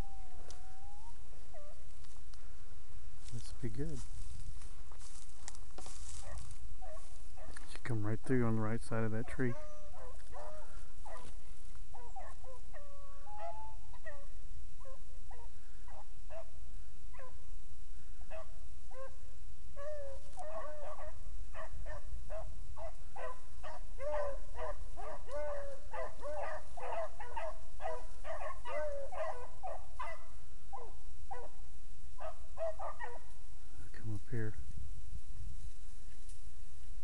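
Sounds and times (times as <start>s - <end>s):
dogs baying: 9.2s - 11.3s, 11.9s - 14.2s, 19.8s - 31.6s, 32.2s - 33.3s.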